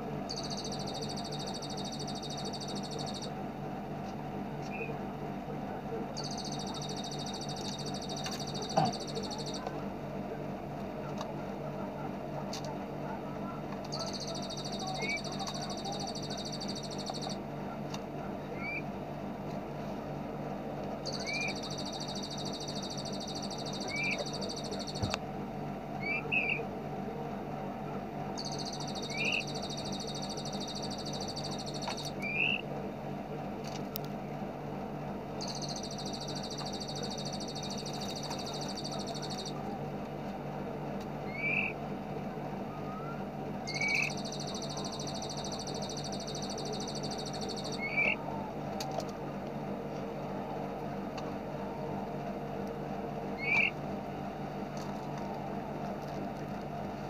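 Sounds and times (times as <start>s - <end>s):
steady low hum: 0.0s - 57.0s
rapid bird trill: 0.3s - 3.3s, 6.2s - 9.6s, 13.9s - 17.4s, 18.6s - 18.9s, 21.0s - 25.1s, 26.0s - 26.6s, 28.4s - 32.6s, 35.4s - 39.6s, 41.3s - 41.8s, 43.7s - 48.2s, 53.4s - 53.8s.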